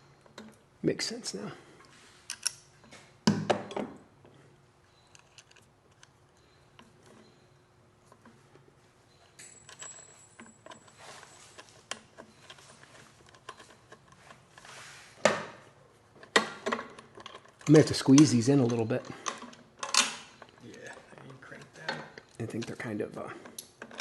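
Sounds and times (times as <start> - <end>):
metal bolts clinking and rattling: 9.2 - 14.4, 16.2 - 20.6.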